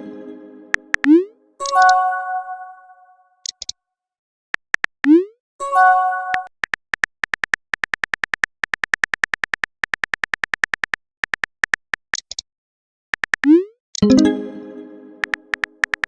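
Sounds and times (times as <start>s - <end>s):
keyboard typing clicks: 0.7s - 2.0s, 6.3s - 12.4s, 15.2s - 16.0s
chime: 14.0s - 15.2s.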